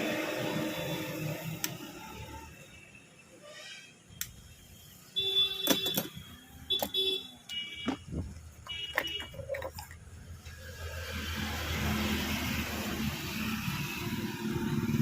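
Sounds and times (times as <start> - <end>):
vehicle engine approaching: 10.1 - 15.0.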